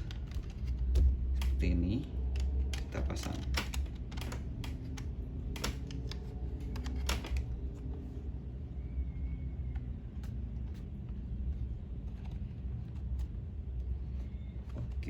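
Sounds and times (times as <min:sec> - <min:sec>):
small plastic clicks: 0:02.2 - 0:07.6.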